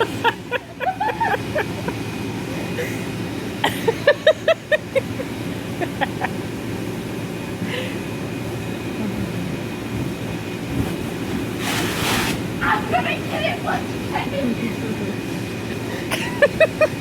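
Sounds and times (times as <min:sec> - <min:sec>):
burst of laughter: 0:00.0 - 0:02.1, 0:15.6 - 0:17.0.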